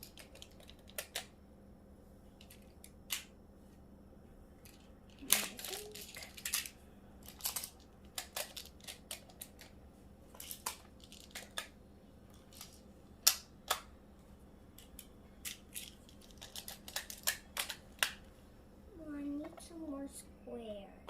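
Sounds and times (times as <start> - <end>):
plastic tiles clicking together: 0.0 - 1.3, 14.8 - 18.1.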